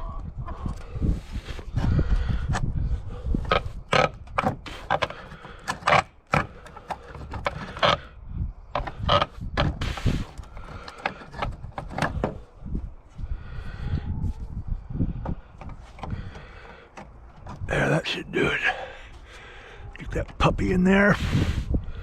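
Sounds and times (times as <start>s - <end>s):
board scraping: 8.8s - 12.4s.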